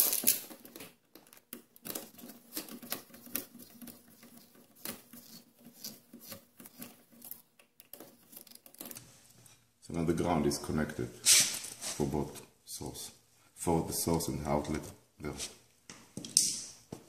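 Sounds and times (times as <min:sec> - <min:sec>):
small metallic clicks and scrapes: 0:00.0 - 0:09.6.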